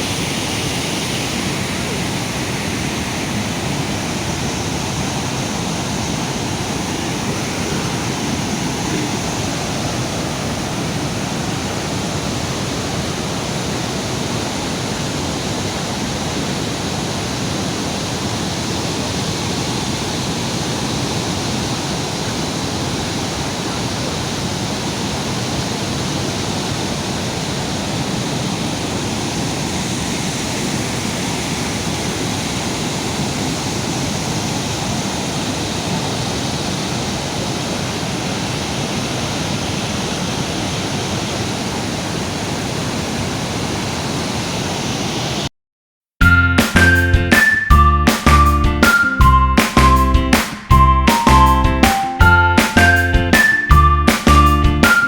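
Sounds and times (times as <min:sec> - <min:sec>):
floodwater rushing: 0:00.0 - 0:45.4.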